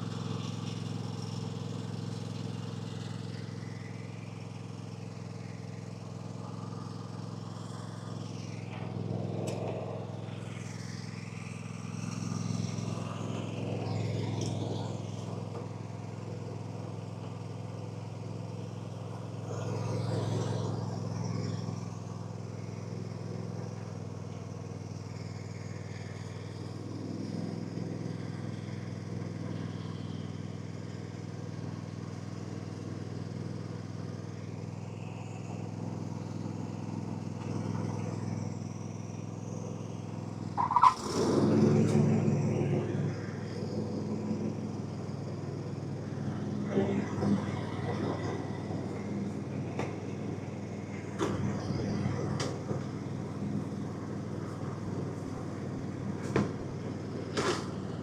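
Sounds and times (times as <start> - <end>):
engine running steadily: 0.0 - 58.0.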